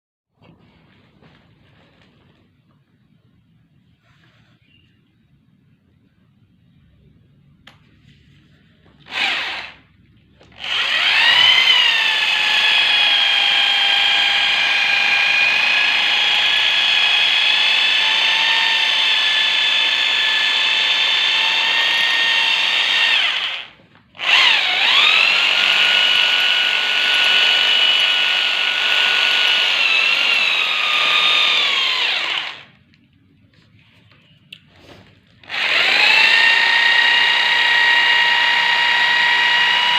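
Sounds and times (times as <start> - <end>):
concrete drill whining: 9.0 - 9.8, 10.4 - 32.8, 35.4 - 39.9.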